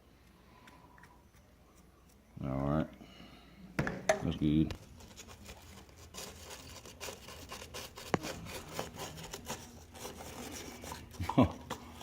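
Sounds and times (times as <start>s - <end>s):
scraping and rubbing on metal: 4.8s - 12.0s.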